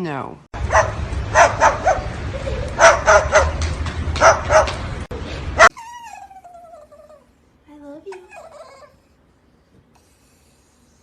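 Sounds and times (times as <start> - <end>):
dog barking: 0.7 - 2.1, 2.8 - 3.6, 4.2 - 4.8.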